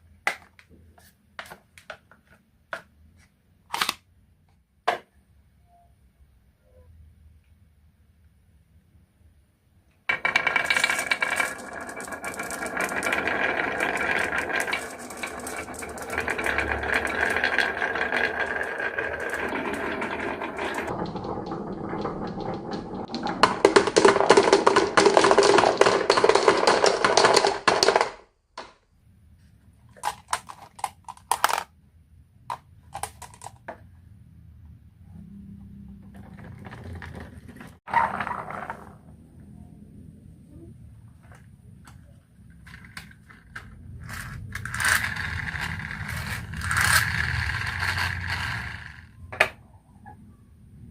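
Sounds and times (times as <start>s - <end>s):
marbles rattling down wooden run: 10.1s - 28.2s, 42.6s - 49.2s.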